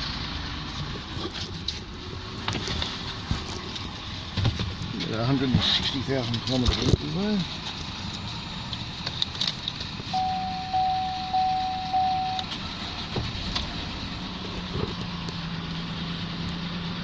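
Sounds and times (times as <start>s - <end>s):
car engine idling: 0.0s - 17.0s
electronic chimes: 10.2s - 12.5s.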